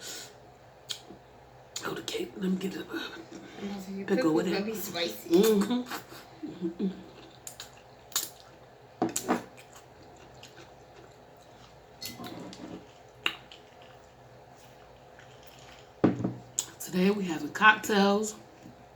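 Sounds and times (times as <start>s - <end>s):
wet mouth chewing sounds: 7.0s - 16.0s.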